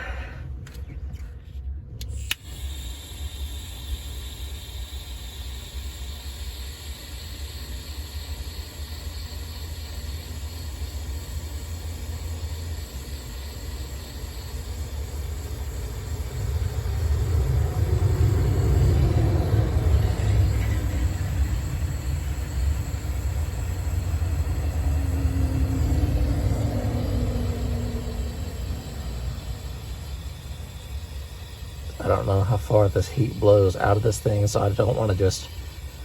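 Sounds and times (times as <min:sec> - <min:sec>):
heat torch rumbling: 0:02.0 - 0:36.0.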